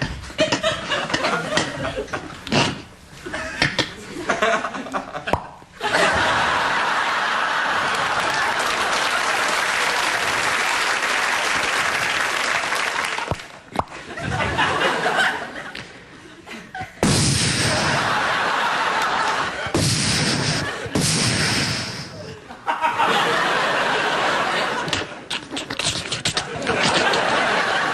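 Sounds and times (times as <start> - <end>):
audience laughing: 0.2 - 2.5, 3.2 - 27.9
applause: 7.7 - 13.6.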